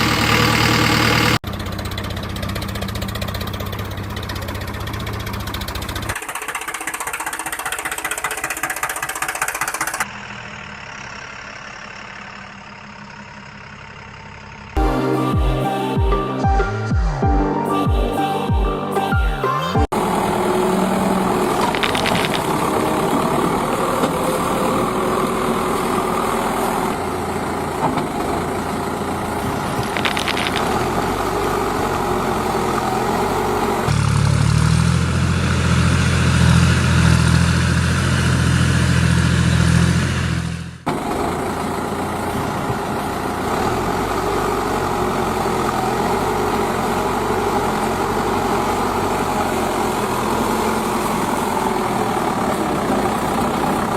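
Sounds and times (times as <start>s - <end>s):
heavy diesel engines running: 0.0s - 53.9s.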